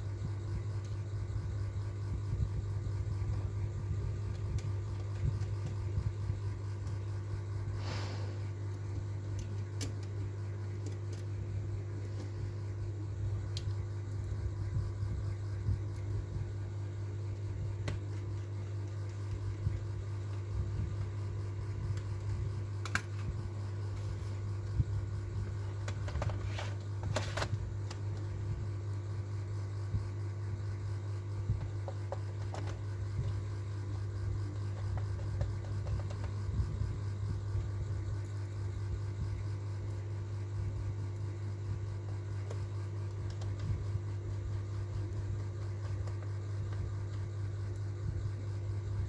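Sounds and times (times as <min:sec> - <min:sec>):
low mechanical hum: 0:00.0 - 0:49.0.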